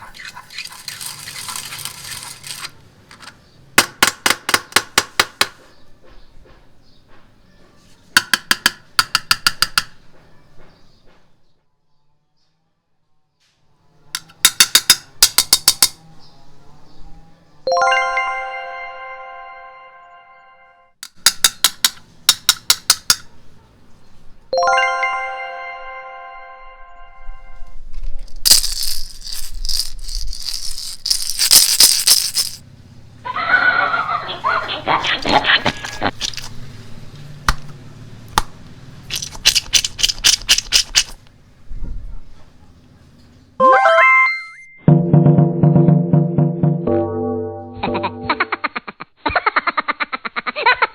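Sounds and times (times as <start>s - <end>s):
sharp clicks: 38.3s - 41.4s.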